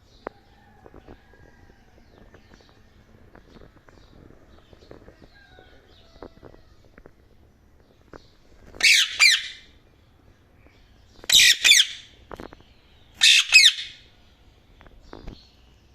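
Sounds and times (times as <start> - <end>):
parakeet squawking: 8.8 - 9.7, 11.3 - 12.1, 13.2 - 14.0.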